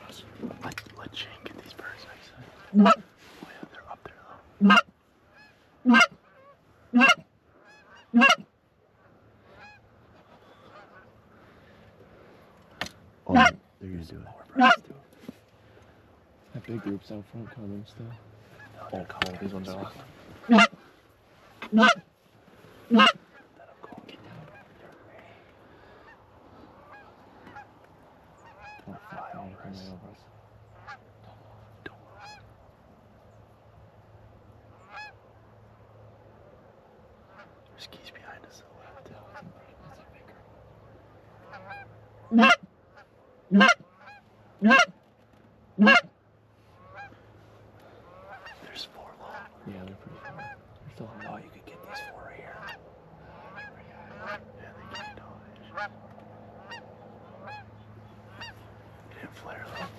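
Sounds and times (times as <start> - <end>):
distant geese honking: 0.0 - 59.9
goose call honks: 2.6 - 3.1, 4.6 - 8.5, 9.4 - 11.2, 12.7 - 13.6, 14.5 - 14.9, 16.6 - 22.1, 22.8 - 27.8, 28.4 - 29.9, 30.7 - 31.1, 32.0 - 32.5, 34.7 - 35.2, 41.4 - 45.0, 45.7 - 56.0, 56.6 - 59.9.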